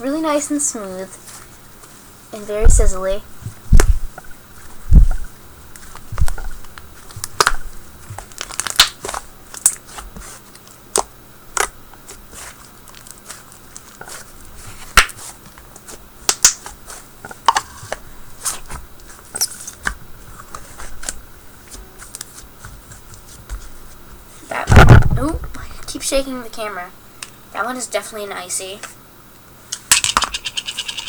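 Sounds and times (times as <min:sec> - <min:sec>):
slime crackles and pops: 0:08.2 - 0:10.0, 0:15.0 - 0:15.2, 0:16.3 - 0:16.8
hands squishing icy slime: 0:08.3 - 0:11.0.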